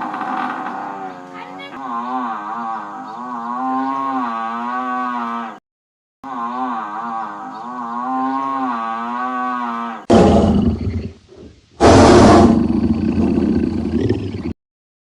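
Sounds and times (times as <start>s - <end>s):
cow mooing: 0.4s - 5.6s, 6.2s - 10.5s
rough animal roars: 6.4s - 14.6s.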